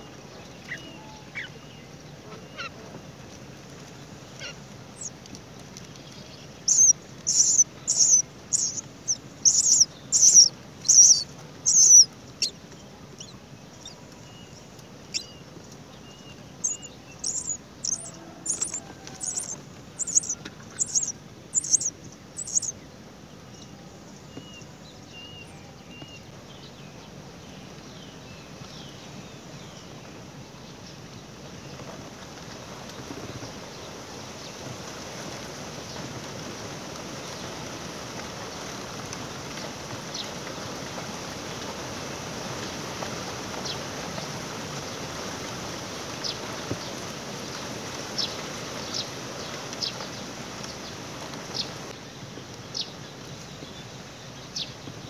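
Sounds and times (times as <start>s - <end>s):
myna high-pitched calls: 0.6s - 1.6s, 6.6s - 12.6s, 13.2s - 14.0s, 16.6s - 22.8s.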